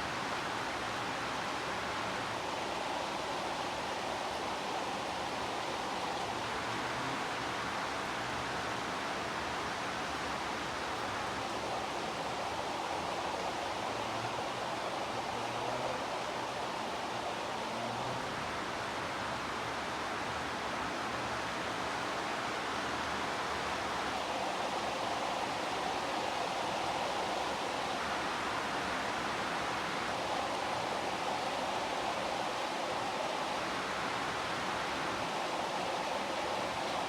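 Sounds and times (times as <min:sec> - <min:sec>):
heavy rain: 0:00.0 - 0:37.0.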